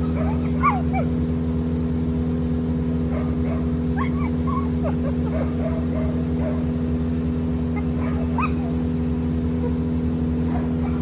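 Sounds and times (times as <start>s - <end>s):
dog whining: 0.0s - 1.2s, 3.5s - 6.7s, 7.7s - 11.0s
machinery engine droning: 0.0s - 11.0s.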